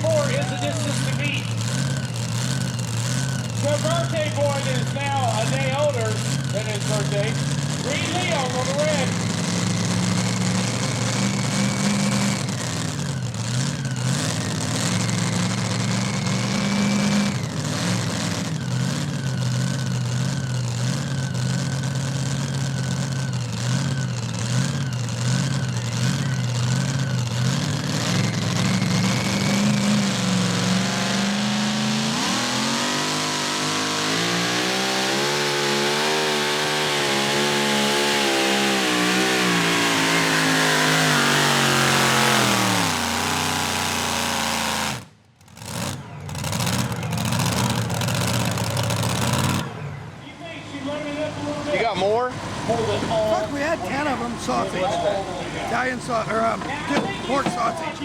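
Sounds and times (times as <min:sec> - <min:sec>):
truck engine revving: 0:00.0 - 0:58.0.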